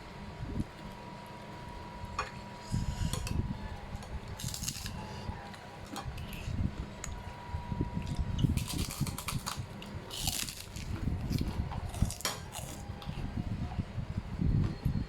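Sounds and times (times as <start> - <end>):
person chewing: 4.4 - 5.0, 8.0 - 13.2.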